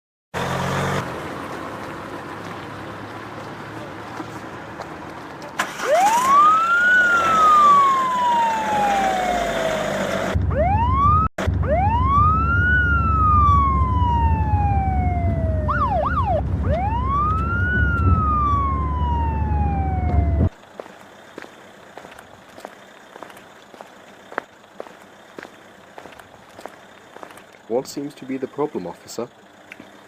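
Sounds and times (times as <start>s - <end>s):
police siren wailing: 5.6s - 20.6s
siren yelp: 5.6s - 20.6s
low rumble: 10.4s - 20.5s.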